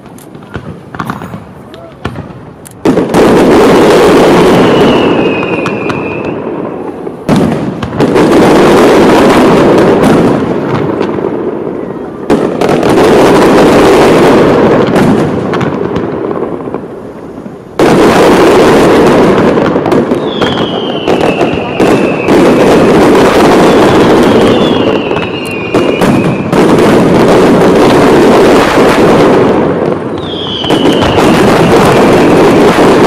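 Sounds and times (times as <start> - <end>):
firework bursts: 0.0 - 33.0
firework crackle: 0.0 - 33.0
falling firework whistle: 3.8 - 10.1, 19.4 - 27.1, 30.0 - 33.0.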